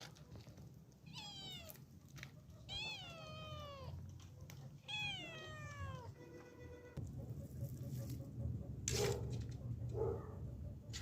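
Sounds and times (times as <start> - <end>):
cat meowing: 1.0 - 1.8, 2.6 - 4.0, 4.8 - 6.2.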